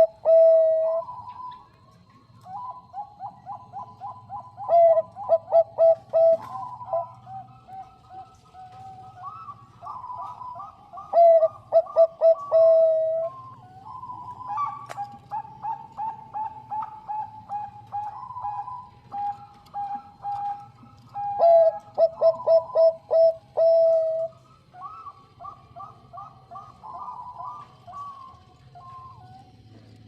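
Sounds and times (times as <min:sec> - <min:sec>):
dove cooing: 0:00.0 - 0:30.0.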